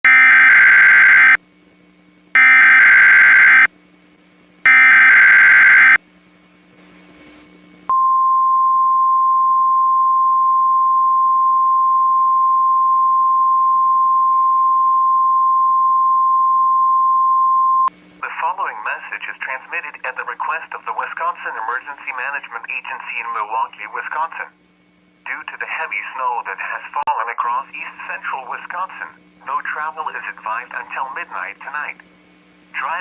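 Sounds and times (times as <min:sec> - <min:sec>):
loud data bursts: 0:00.0 - 0:01.4, 0:02.4 - 0:03.7, 0:04.7 - 0:06.0
steady warning alarm tone: 0:00.0 - 0:01.4, 0:02.4 - 0:03.7, 0:04.6 - 0:06.0
faint hum: 0:00.1 - 0:33.0.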